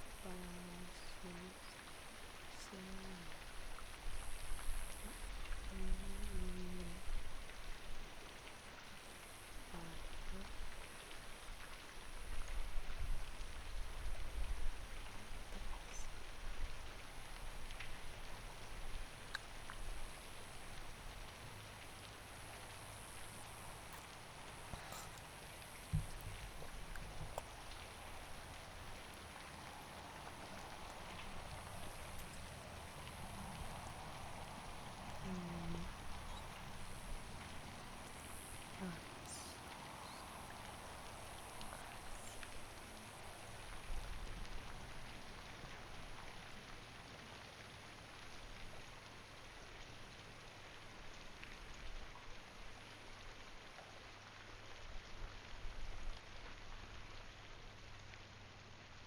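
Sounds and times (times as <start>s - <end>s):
faint ticks: 0.0s - 46.7s
rain falling: 0.0s - 59.0s.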